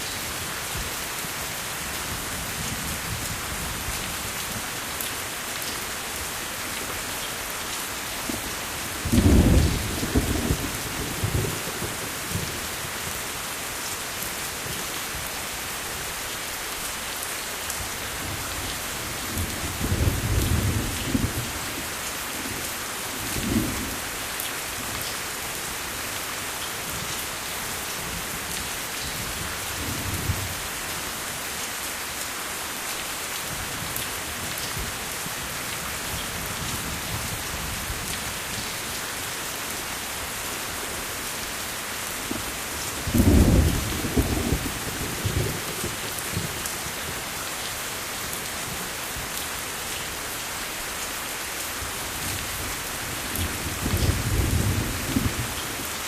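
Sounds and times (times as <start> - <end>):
thunder rumbling: 9.0 - 12.6, 43.0 - 46.0.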